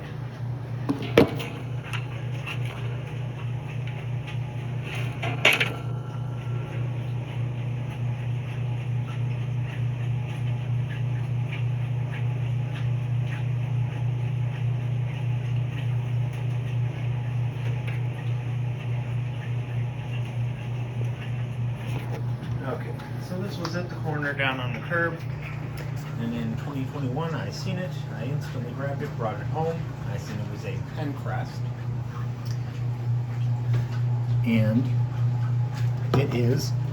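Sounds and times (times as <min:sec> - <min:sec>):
low hum: 0:00.0 - 0:08.1.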